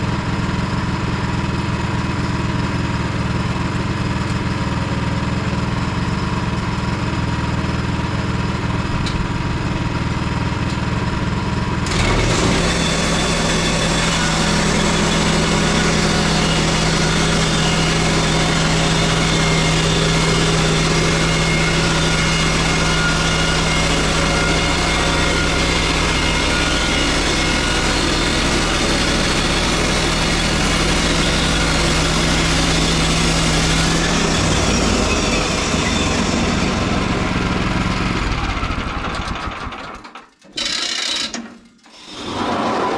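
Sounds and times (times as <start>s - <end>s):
bandsaw mill gas engine running: 0.0s - 42.9s
bandsaw sawing boards: 11.8s - 42.9s.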